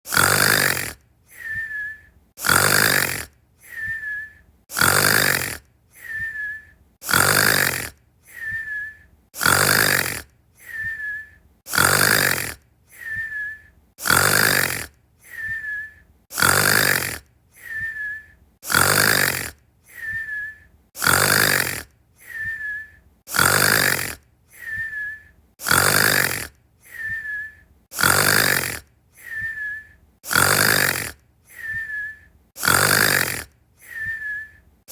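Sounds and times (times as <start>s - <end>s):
loud snoring: 0.1s - 34.6s
breath out with high whistle: 1.3s - 2.1s, 3.6s - 4.4s, 5.9s - 6.8s, 8.3s - 9.1s, 10.6s - 11.4s, 12.9s - 13.7s, 15.2s - 16.0s, 17.6s - 18.4s, 19.9s - 20.7s, 22.2s - 23.0s, 24.5s - 25.4s, 26.8s - 27.7s, 29.2s - 30.0s, 31.5s - 32.3s, 33.8s - 34.6s.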